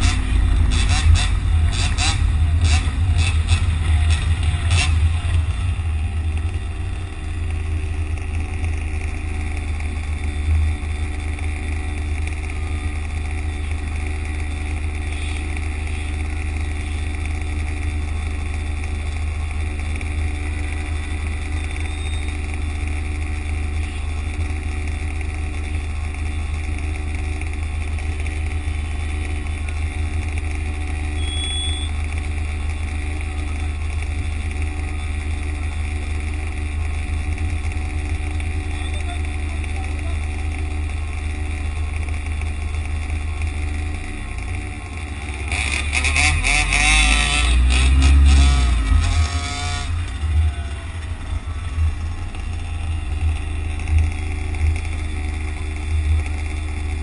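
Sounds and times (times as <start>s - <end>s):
steady high whine: 0.0s - 47.6s, 48.2s - 57.0s
heavy low rumble of vehicle: 0.0s - 57.0s.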